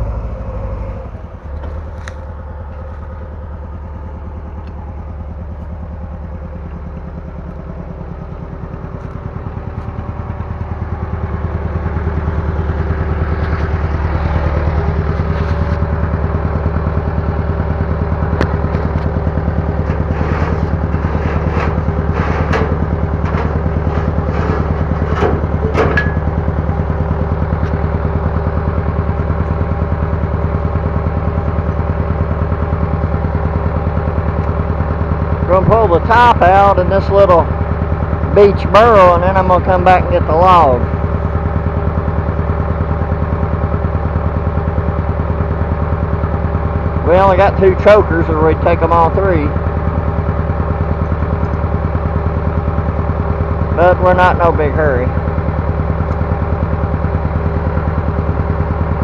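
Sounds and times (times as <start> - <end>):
bulldozer diesel engine running: 0.0 - 59.0
metallic clanks and rattles: 18.4 - 26.8.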